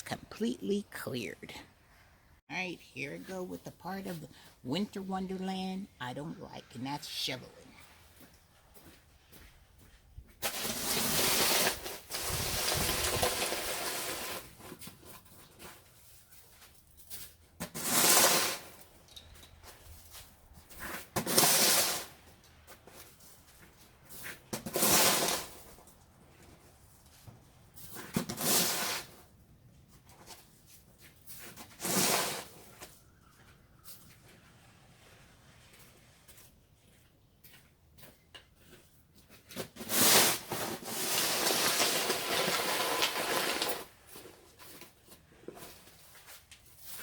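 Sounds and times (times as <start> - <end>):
snow shovel scraping icy snow: 10.4 - 14.8, 17.7 - 18.8, 20.9 - 22.2, 24.6 - 25.6, 28.2 - 29.2, 31.5 - 32.6, 39.6 - 44.0.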